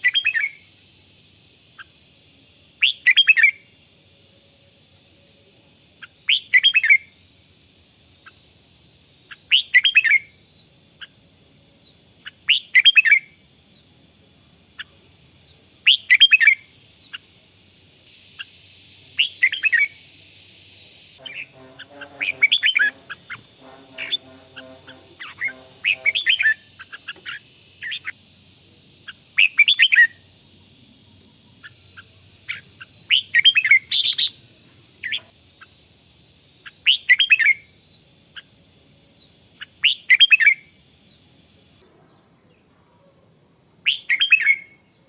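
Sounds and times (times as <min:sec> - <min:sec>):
bird singing chirpy phrases: 0:19.2 - 0:20.0, 0:20.6 - 0:28.1
steady high thin tone: 0:21.2 - 0:26.8.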